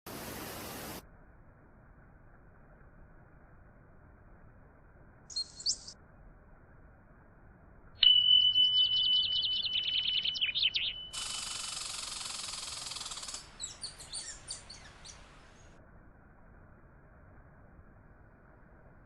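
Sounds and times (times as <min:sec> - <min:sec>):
steady hiss: 0:00.1 - 0:01.0, 0:11.2 - 0:15.8
songbird singing: 0:05.3 - 0:06.0, 0:08.0 - 0:15.8.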